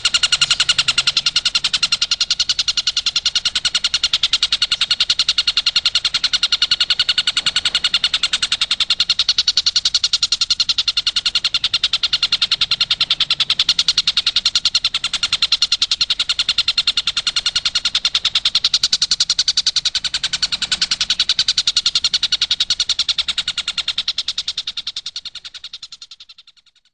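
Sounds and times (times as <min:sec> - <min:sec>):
kingfisher chattering trill: 0:00.0 - 0:26.6.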